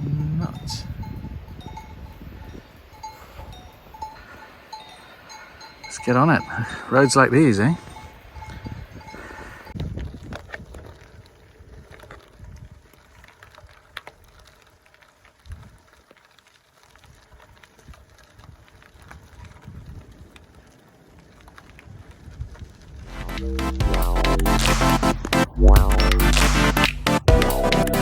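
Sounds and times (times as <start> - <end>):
wind gusting over microphone: 0.0 - 4.2.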